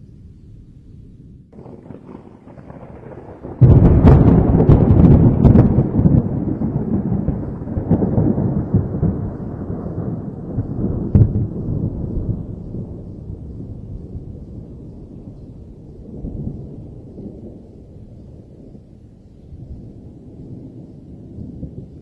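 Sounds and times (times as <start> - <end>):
thunder rumbling: 1.2 - 22.0
thunder cracking: 1.6 - 18.9.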